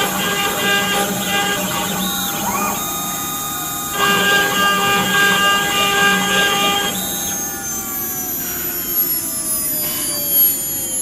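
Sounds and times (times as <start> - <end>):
router spindle whining: 0.0 - 11.0.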